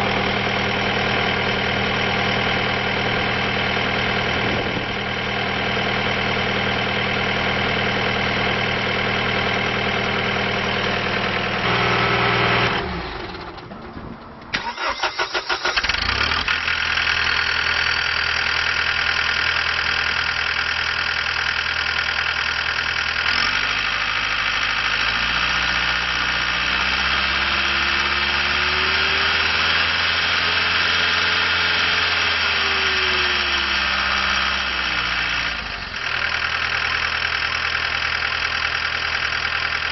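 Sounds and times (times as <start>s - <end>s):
diesel engine running: 0.0s - 39.9s
engine starter cranking: 14.5s - 16.7s.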